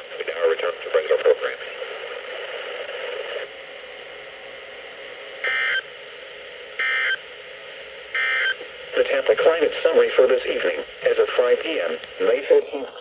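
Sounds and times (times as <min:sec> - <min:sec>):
radio hiss: 0:00.0 - 0:13.0.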